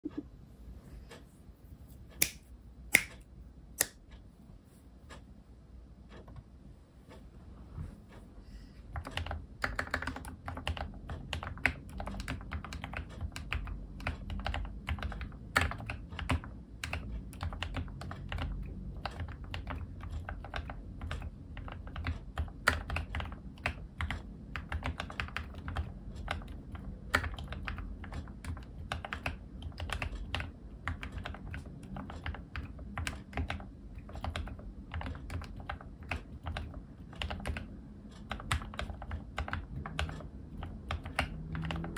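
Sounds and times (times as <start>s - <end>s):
mechanical keyboard typing: 8.9s - 41.9s.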